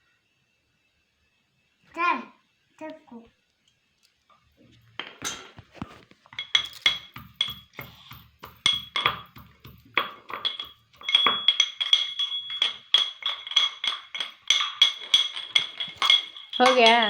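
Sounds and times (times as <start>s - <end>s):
metal utensil clinking steel vessel: 5.2s - 5.6s, 6.4s - 17.0s.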